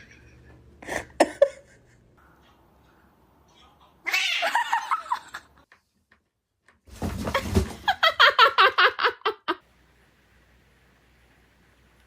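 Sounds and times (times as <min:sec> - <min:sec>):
person laughing: 0:00.0 - 0:02.1, 0:07.8 - 0:09.6.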